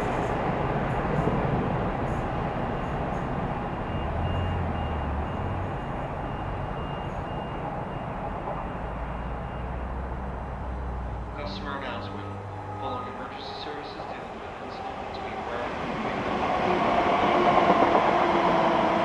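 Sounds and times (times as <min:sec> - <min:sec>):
train rumbling past: 0:00.0 - 0:19.0
car alarm beeping: 0:02.2 - 0:10.0.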